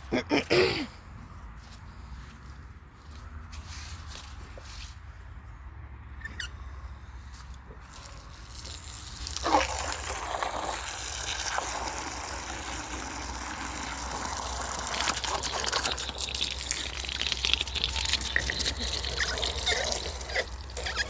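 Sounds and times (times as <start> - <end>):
water pouring: 7.9 - 21.0.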